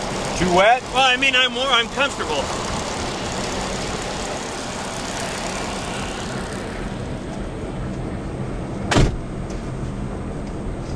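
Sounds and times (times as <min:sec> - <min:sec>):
road noise: 0:00.0 - 0:10.9
van engine hum: 0:00.0 - 0:10.9
sharp thump: 0:08.9 - 0:09.3.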